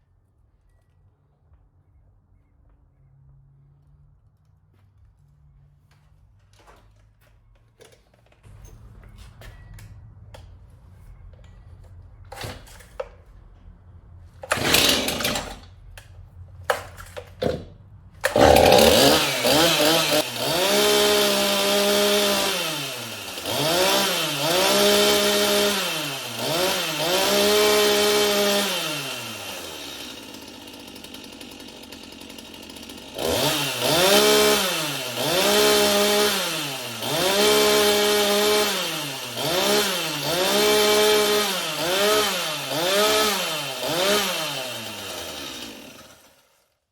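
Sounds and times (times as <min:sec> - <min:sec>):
chainsaw engine revving: 0:14.4 - 0:15.6, 0:18.2 - 0:46.6
chainsaw idling: 0:14.4 - 0:15.6, 0:18.2 - 0:46.6
starter cord pulls: 0:14.4 - 0:15.7, 0:18.2 - 0:20.2.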